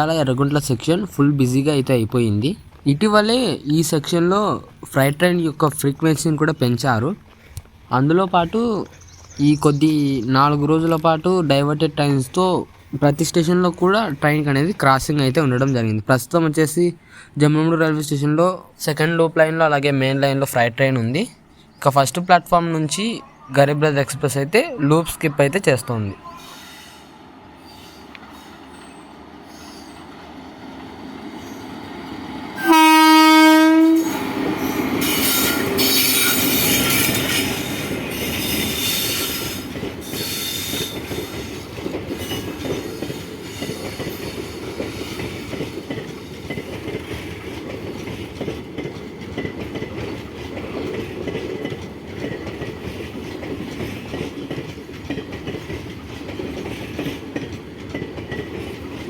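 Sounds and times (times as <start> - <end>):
train rumble: 0.0 - 59.0
coaches clattering over rails: 19.0 - 59.0
locomotive horn blast: 32.6 - 37.2
high wheel squeal: 34.0 - 41.6.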